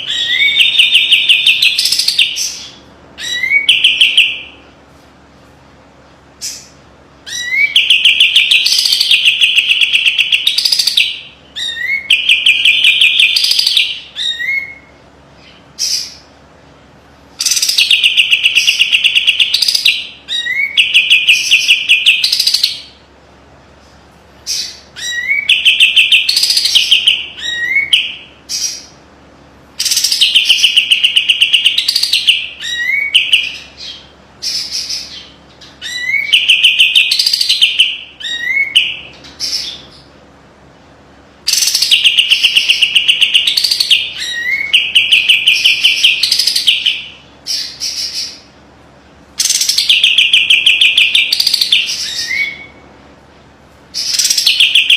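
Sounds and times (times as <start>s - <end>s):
bulbul singing with high trills: 0.0s - 4.6s, 7.3s - 16.3s, 41.5s - 48.5s, 49.4s - 52.8s.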